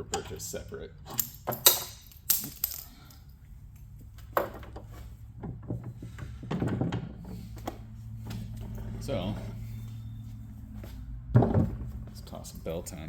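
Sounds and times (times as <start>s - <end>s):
metal parts clinking and rattling: 1.1s - 3.4s.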